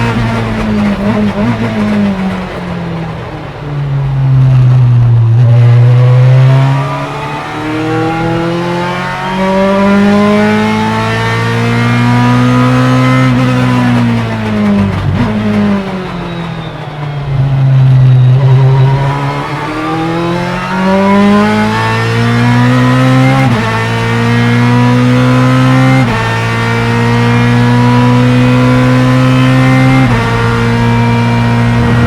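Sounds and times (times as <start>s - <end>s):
engine crackles: 0.0s - 22.1s, 26.0s - 32.0s
race car engine revving: 0.0s - 32.0s.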